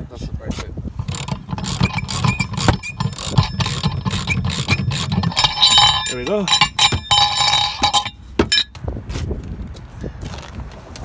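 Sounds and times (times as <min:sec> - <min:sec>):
metallic clicks of tire tools: 0:01.0 - 0:08.8.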